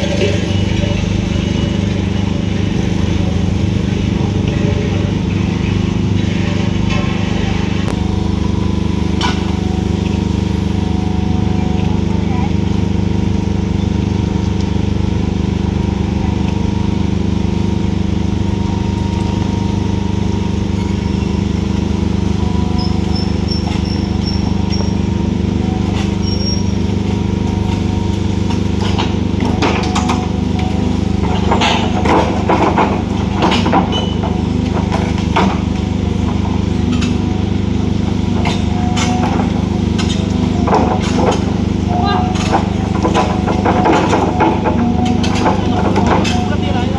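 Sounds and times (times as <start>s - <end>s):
excavator diesel engine running: 0.0s - 46.9s
sharp clanks and knocks: 22.4s - 46.9s.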